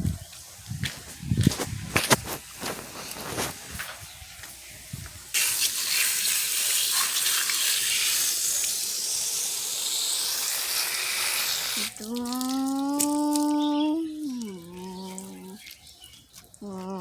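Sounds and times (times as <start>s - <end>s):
steady hiss: 0.0s - 11.9s.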